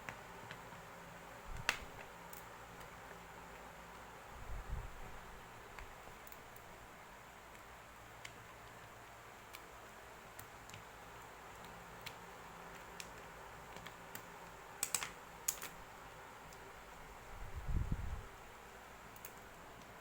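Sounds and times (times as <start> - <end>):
light clicks and taps: 0.0 - 0.8, 7.5 - 15.8
faint steady hiss: 0.0 - 20.0.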